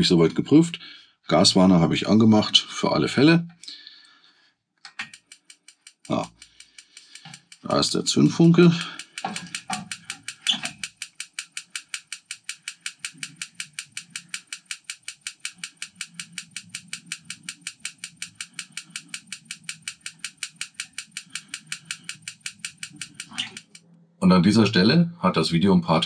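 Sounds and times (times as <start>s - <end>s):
gas heater igniter clicking: 4.9s - 23.8s.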